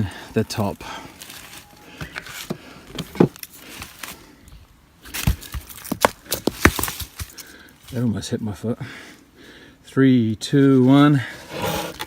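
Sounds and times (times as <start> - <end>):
wooden box being handled: 1.2 - 4.1.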